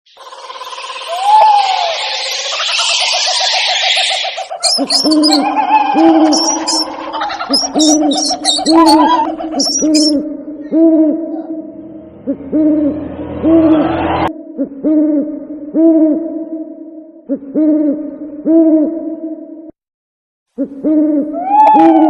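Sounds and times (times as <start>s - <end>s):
owl hooting: 0.2s - 13.9s, 20.6s - 22.0s
high squeaky chirps: 2.0s - 10.2s.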